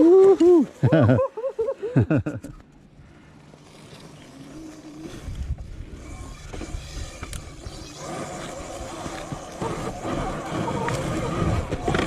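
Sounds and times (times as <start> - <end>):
wind and tyres rumbling: 2.3 - 12.0
faint electric motor whine: 2.5 - 12.0
bike knocking and rattling: 3.6 - 12.0.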